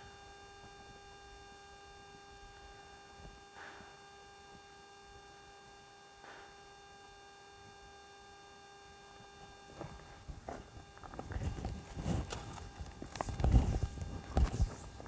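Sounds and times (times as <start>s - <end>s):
faint steady hum: 0.0s - 15.0s
horse hooves stepping on ground: 9.2s - 15.0s.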